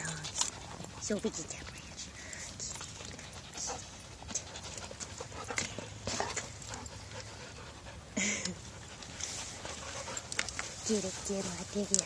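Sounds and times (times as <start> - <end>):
dogs panting: 0.0 - 12.0
rustling: 8.6 - 12.0.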